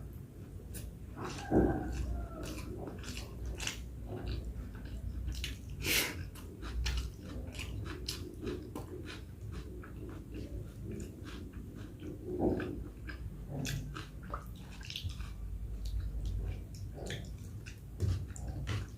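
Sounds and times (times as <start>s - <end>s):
person chewing food: 0.0s - 18.9s
wet mouth and lip clicks: 12.0s - 18.9s.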